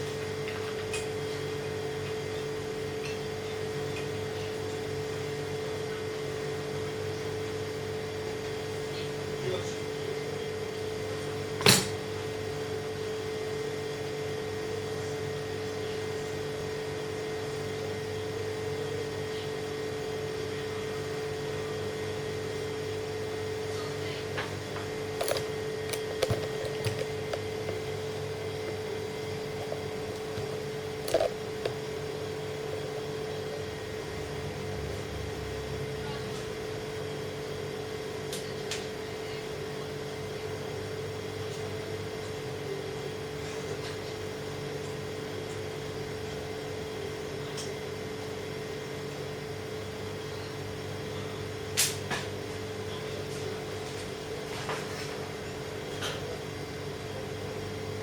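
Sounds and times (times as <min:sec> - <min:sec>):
machine hum: 0:24.6 - 0:35.5
sharp clicks and knocks: 0:25.2 - 0:28.0.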